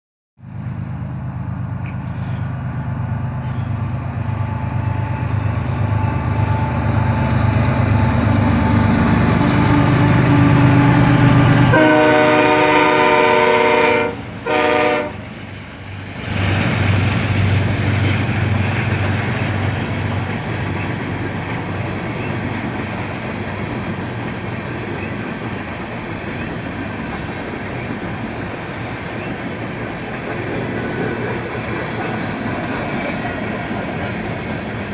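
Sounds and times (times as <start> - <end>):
diesel locomotive engine rumble: 0.4 - 34.9
train air horn blasts: 8.3 - 15.3.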